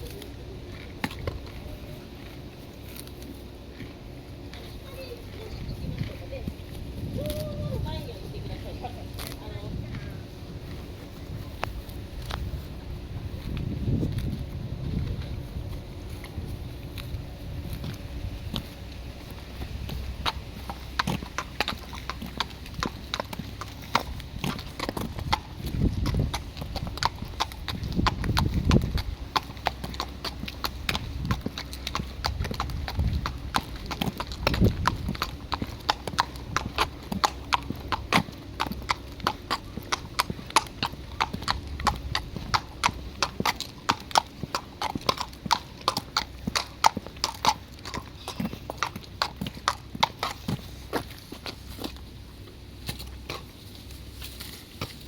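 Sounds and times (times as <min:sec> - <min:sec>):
dog crunching something hard: 0:00.0 - 0:07.0, 0:10.6 - 0:55.0.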